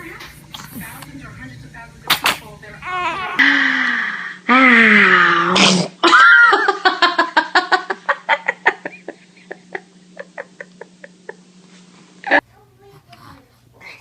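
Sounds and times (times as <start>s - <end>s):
small child crying: 2.8s - 3.5s.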